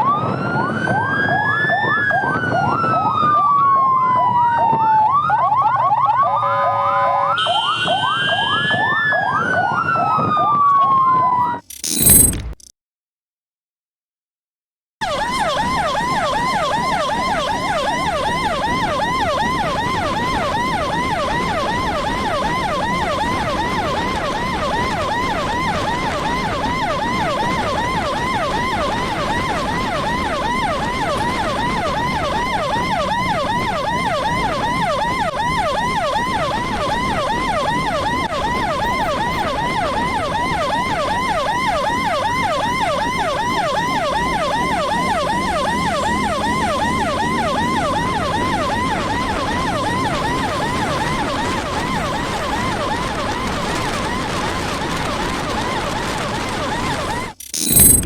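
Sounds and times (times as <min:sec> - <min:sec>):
electronic siren yelping: 0:11.7 - 0:12.6, 0:24.2 - 0:53.6, 0:55.4 - 0:58.0
road and engine noise: 0:24.0 - 0:53.5.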